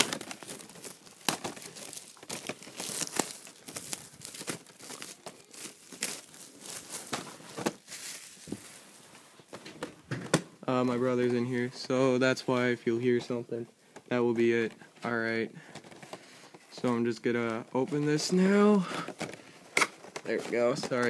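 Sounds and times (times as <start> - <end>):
plastic film crinkling and tearing: 0.0 - 9.2.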